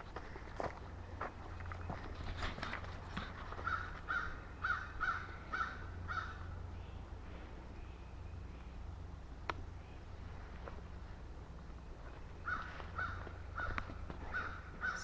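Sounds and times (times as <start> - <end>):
bird calling: 1.8 - 8.8, 11.8 - 15.0.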